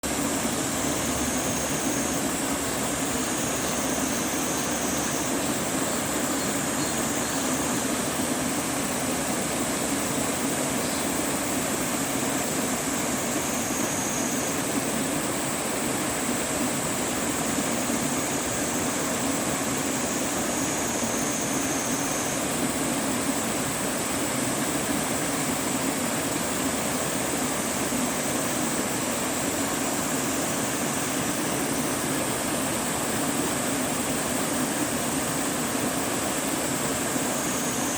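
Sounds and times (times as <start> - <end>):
stream rushing water: 0.1 - 37.9.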